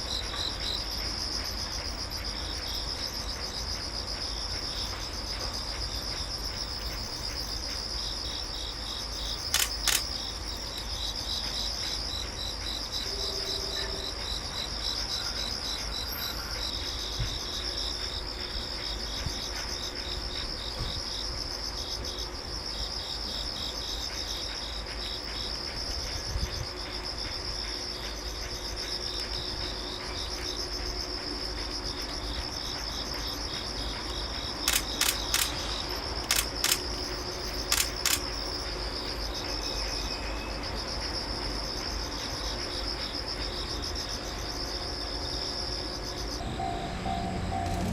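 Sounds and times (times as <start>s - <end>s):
insects chirring: 0.0s - 47.9s
sharp clicks: 9.5s - 10.2s, 34.7s - 35.6s, 36.2s - 38.3s.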